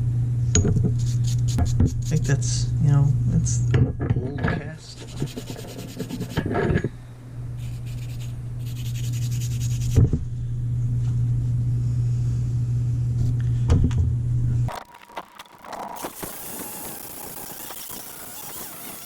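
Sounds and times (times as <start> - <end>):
abrasive tool scraping metal: 4.6 - 6.9
electric motor hum: 5.0 - 19.0.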